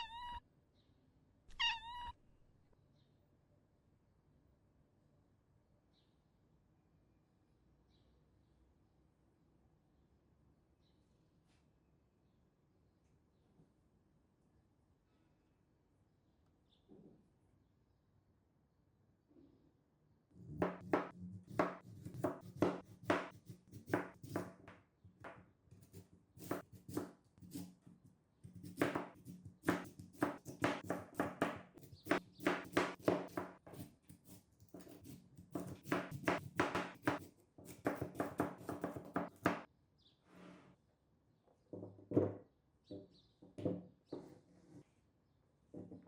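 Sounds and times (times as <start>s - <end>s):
knife chopping on cutting board: 20.6s - 27.7s, 28.5s - 33.9s, 34.8s - 39.6s.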